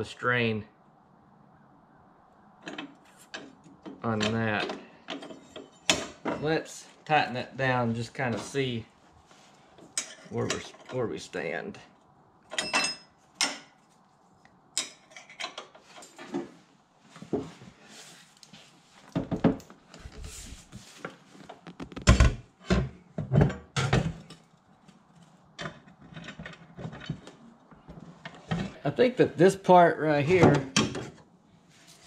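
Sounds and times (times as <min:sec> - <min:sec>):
metallic clanks of tools: 0:09.9 - 0:11.0, 0:12.5 - 0:13.8.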